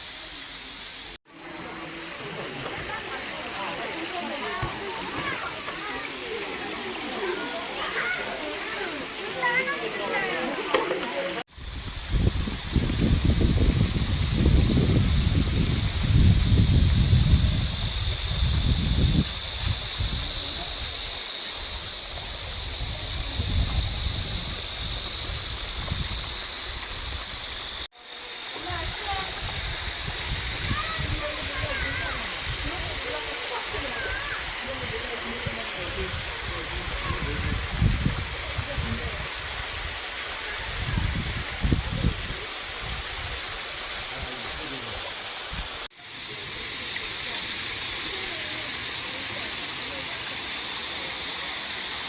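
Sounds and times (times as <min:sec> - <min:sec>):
stream water rushing: 0:01.3 - 0:11.6, 0:25.3 - 0:52.0
low rumbling on microphone: 0:11.6 - 0:20.9, 0:21.7 - 0:27.3.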